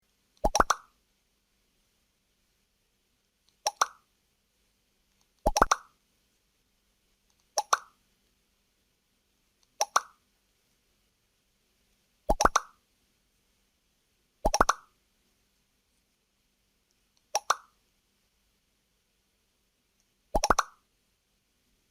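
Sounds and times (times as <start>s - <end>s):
pop sound effect: 0.4s - 0.9s, 3.6s - 4.0s, 5.4s - 5.9s, 7.6s - 7.9s, 9.8s - 10.2s, 12.3s - 12.8s, 14.4s - 14.9s, 17.4s - 17.7s, 20.4s - 20.8s
short popping blip: 14.4s - 14.8s.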